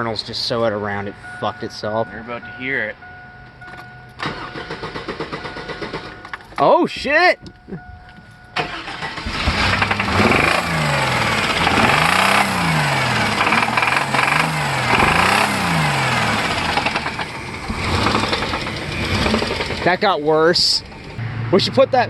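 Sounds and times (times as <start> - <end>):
engine revving and idling: 8.6 - 20.2
engine knocking: 9.3 - 20.0.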